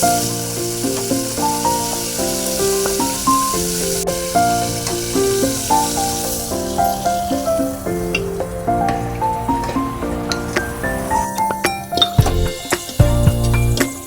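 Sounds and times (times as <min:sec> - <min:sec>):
food sizzling in a hot pan: 0:00.0 - 0:08.6
plucked instrumental music: 0:00.0 - 0:14.0.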